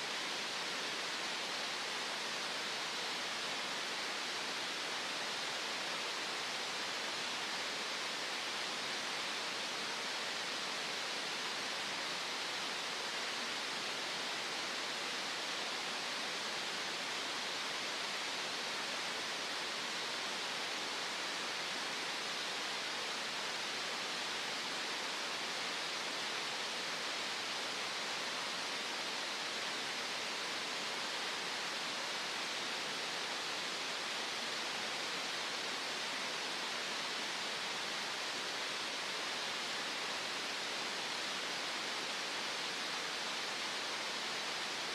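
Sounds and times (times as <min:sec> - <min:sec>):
green noise hiss: 0:00.0 - 0:44.9.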